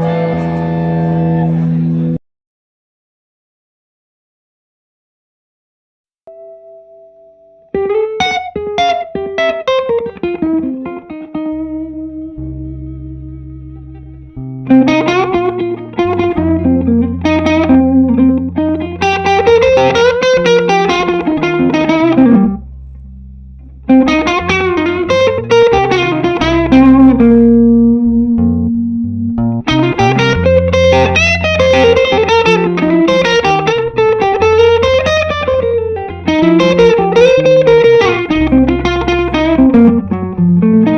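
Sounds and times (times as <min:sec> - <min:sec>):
bass notes: 0:00.0 - 0:02.2, 0:11.4 - 0:40.9
electric guitar lead phrases: 0:00.0 - 0:02.2, 0:06.3 - 0:40.9.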